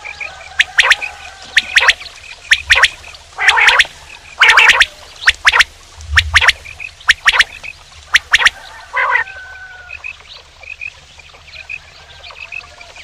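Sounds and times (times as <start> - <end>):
quail calling: 0.0 - 10.3.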